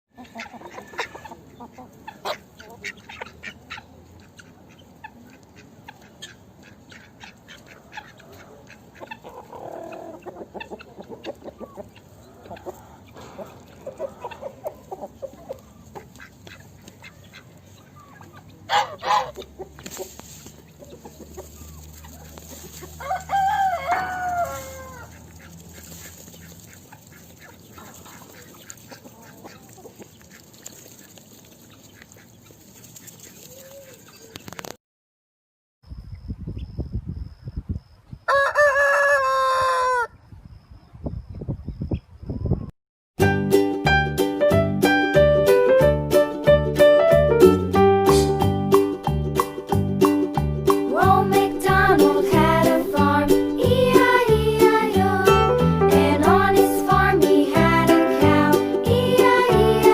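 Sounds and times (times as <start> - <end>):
chickens clucking: 0.1 - 34.8, 44.8 - 59.9
chicken squawks: 0.2 - 20.1, 20.7 - 30.8, 38.3 - 40.2
rooster crowing: 23.0 - 25.1, 38.3 - 40.2.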